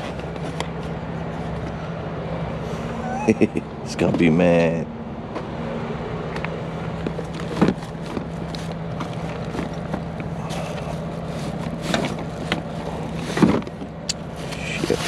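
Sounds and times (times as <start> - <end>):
diesel truck engine humming: 0.0 - 15.0
clicks and knocks of handling: 6.3 - 15.0.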